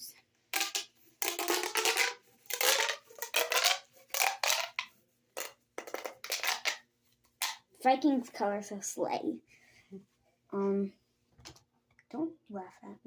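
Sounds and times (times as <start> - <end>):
plastic pop tubes popping: 0.5 - 6.8, 7.4 - 7.7.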